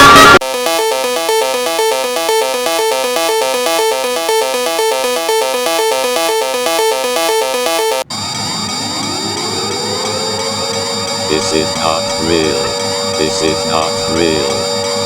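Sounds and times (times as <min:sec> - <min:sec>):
looping electronic alert jingle: 0:00.0 - 0:08.0, 0:11.2 - 0:14.8.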